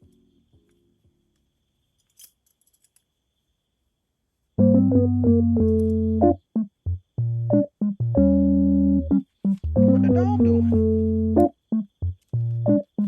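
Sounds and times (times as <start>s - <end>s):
electric piano chords: 4.6s - 13.0s.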